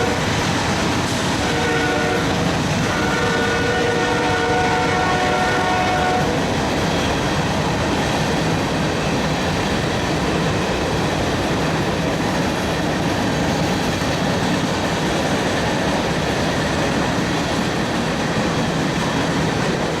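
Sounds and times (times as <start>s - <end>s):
train horn: 0.0s - 6.6s
train cars rumbling and rattling: 0.0s - 20.0s.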